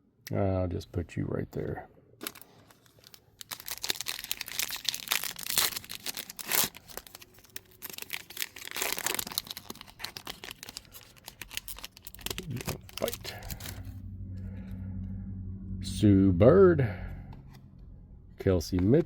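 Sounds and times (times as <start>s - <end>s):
plastic wrapper ripping: 2.2s - 13.9s
plastic wrapper crinkling: 2.2s - 14.0s.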